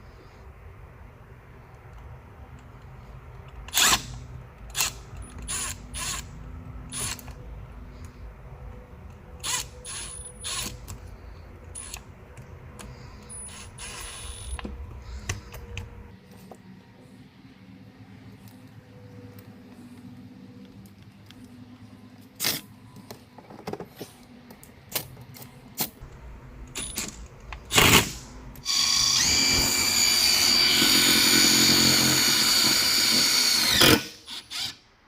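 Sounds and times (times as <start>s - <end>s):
power tool driving screws: 3.7s - 6.3s, 6.9s - 7.4s, 13.2s - 14.6s, 26.8s - 34.8s.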